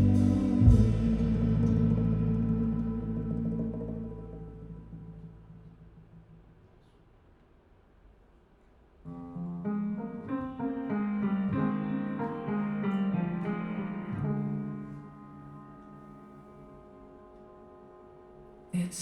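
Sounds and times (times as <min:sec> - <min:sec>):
instrumental music over loudspeakers: 0:00.0 - 0:04.8.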